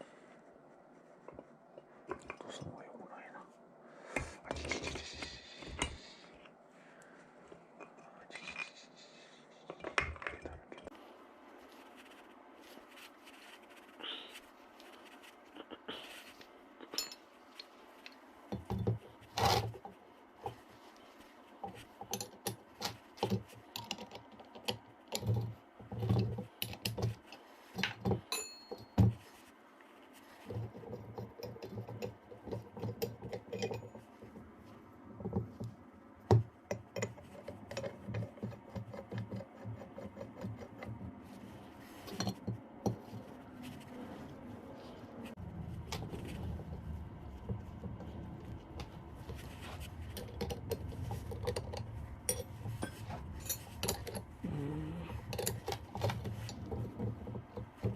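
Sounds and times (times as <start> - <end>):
metal parts clicking and scraping: 49.8 - 54.4.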